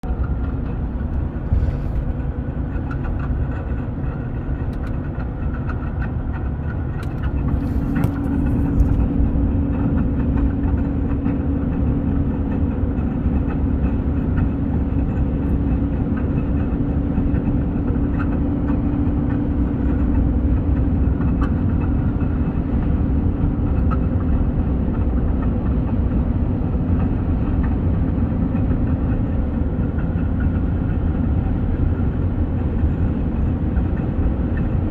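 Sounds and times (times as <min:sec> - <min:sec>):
steady droning tone: 0:00.0 - 0:16.2
car engine running: 0:00.0 - 0:34.9.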